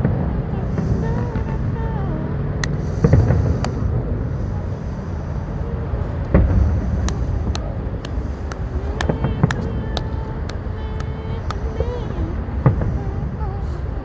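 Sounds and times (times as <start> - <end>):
firework pops and crackles: 0.0 - 1.8, 2.6 - 5.4, 6.1 - 13.5
low rumble: 0.0 - 14.0
distant firework booms: 2.6 - 10.2.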